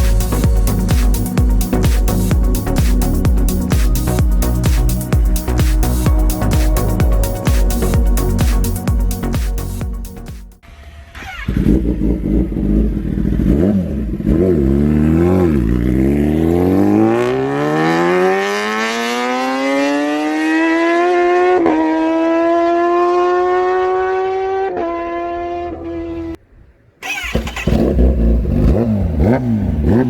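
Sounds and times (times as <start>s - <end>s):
motorcycle engine revving: 10.7s - 26.4s, 27.0s - 30.0s
quick gear upshifts: 27.0s - 30.0s.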